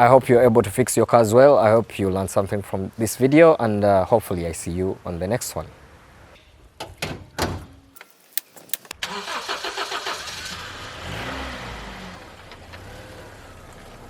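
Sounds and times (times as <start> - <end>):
sharp clicks: 8.0 - 9.0
car engine starting and idling: 8.6 - 14.0.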